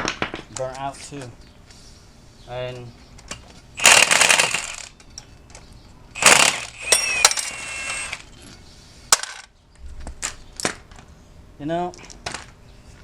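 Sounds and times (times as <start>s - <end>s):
metal piece ringing: 6.8s - 7.6s.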